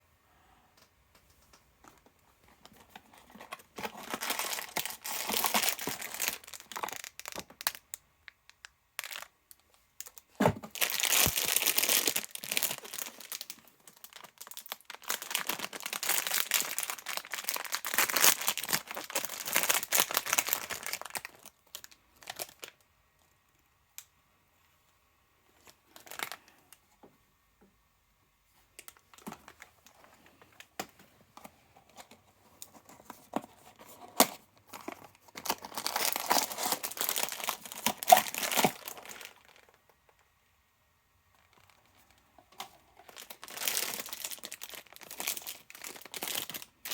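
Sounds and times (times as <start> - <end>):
packaging crinkling and tearing: 1.9 - 8.0, 8.6 - 22.8, 25.6 - 26.6, 31.9 - 39.8, 41.4 - 46.9.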